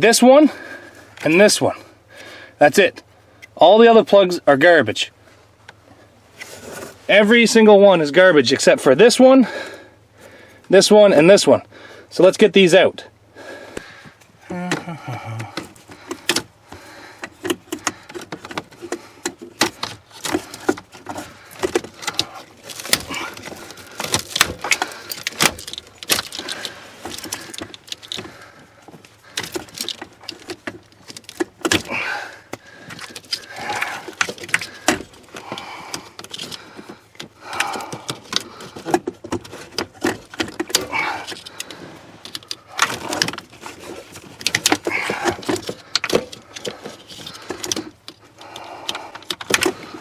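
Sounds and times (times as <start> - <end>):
wires rustling and scraping: 5.2 - 9.2, 13.4 - 50.0
plastic connectors clicking and rattling: 14.5 - 50.0.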